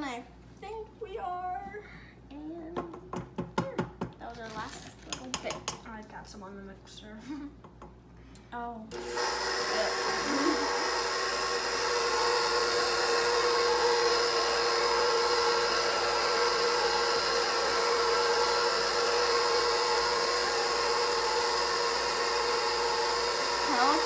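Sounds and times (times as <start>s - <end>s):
electric mixer motor hum: 8.9s - 24.0s.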